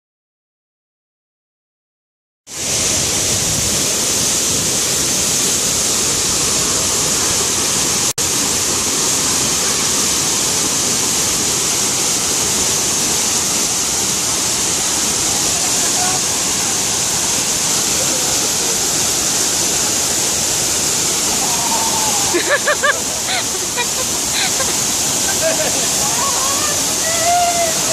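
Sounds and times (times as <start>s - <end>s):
waterfall rushing: 2.5s - 27.9s.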